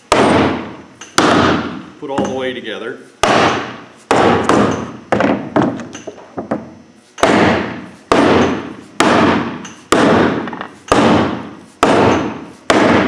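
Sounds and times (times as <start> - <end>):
hammer striking metal: 0.1 - 2.4, 3.2 - 4.9, 7.2 - 13.0.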